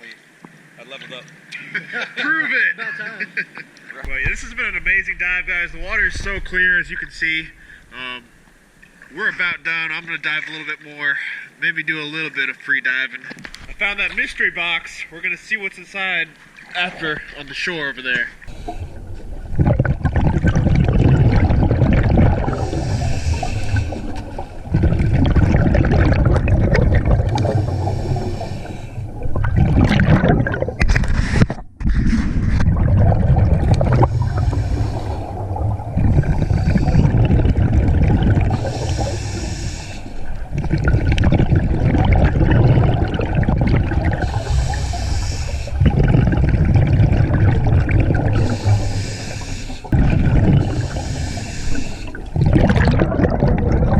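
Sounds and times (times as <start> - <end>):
underwater bubbles gurgling: 4.1 - 9.2, 18.3 - 53.9
short breathing hiss: 22.6 - 24.6, 27.5 - 29.1, 34.1 - 35.4, 38.6 - 40.3, 44.2 - 45.8, 48.5 - 49.9, 50.6 - 52.2.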